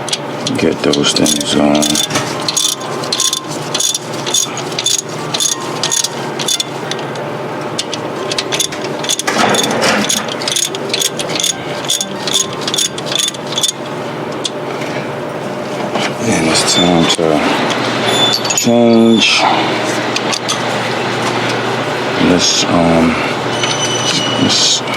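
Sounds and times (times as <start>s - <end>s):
hand ratchet clicking: 0.0s - 7.1s, 7.8s - 14.6s
metal clatter: 8.3s - 13.8s.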